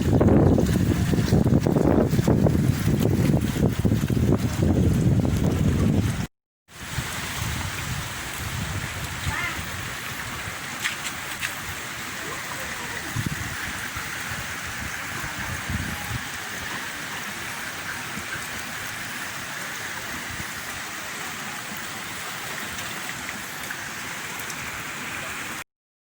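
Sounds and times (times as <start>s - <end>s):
heavy rain: 6.8s - 25.6s.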